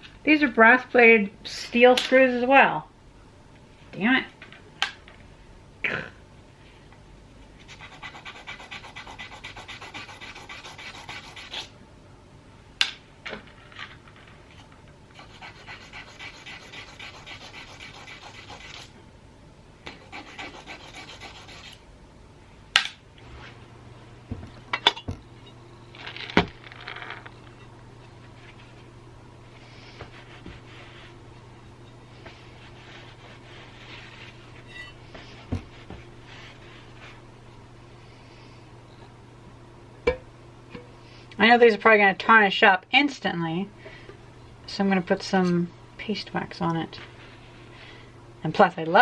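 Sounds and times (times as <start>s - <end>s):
low steady hum: 0.0s - 49.0s
rapid rubbing strokes polishing: 7.7s - 11.7s, 15.2s - 18.9s, 20.0s - 21.8s, 32.2s - 37.2s.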